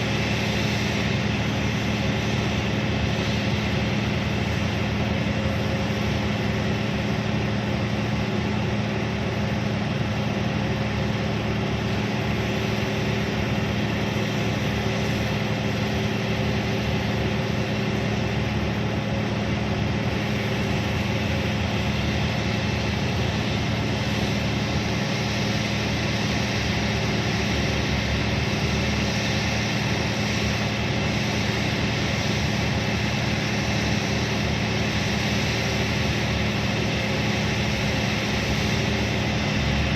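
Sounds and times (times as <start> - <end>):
diesel excavator engine droning: 0.0 - 39.9.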